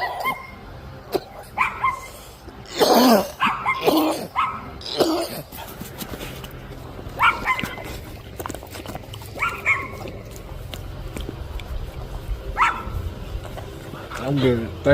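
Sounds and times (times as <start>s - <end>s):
dog barking and yipping: 0.0s - 0.6s, 1.2s - 2.3s, 3.2s - 6.0s, 7.1s - 8.2s, 9.2s - 10.6s, 12.5s - 14.4s.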